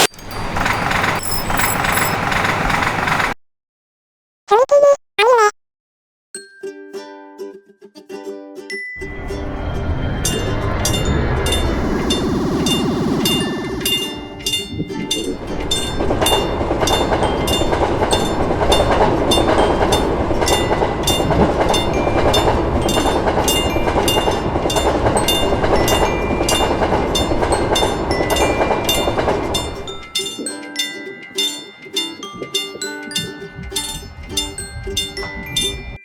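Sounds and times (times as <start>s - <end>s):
level crossing warning bell: 0.0s - 2.5s, 9.0s - 36.0s
train wheels rumbling on rail: 0.2s - 3.3s, 9.0s - 30.2s.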